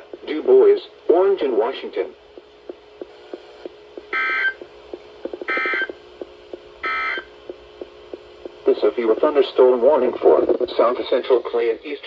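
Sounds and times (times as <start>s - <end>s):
faint ticking: 2.2s - 9.8s.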